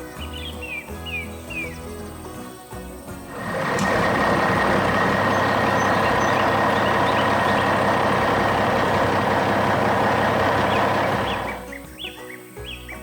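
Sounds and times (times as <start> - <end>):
heavy vehicle engine running: 3.3 - 11.7
steady high whine: 3.3 - 11.7.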